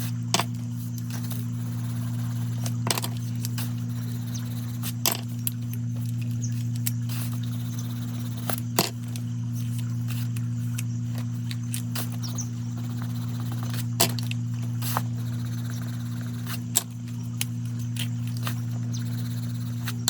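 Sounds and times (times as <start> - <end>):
steady low hum: 0.0 - 20.0
pencils clicking when set down: 2.6 - 3.7, 4.8 - 7.4, 8.4 - 10.4, 13.7 - 15.0, 16.5 - 18.6.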